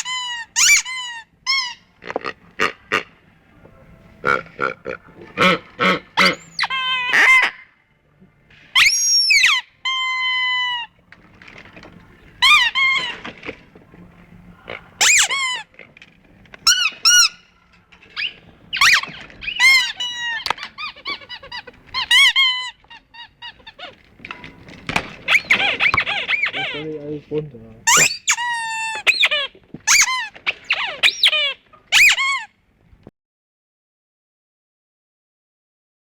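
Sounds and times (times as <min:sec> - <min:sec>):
squeaky toys squeaking: 0:00.0 - 0:01.9, 0:05.4 - 0:07.7, 0:08.7 - 0:11.0, 0:12.4 - 0:13.5, 0:14.9 - 0:15.8, 0:16.6 - 0:24.0, 0:25.2 - 0:27.0, 0:27.8 - 0:32.6.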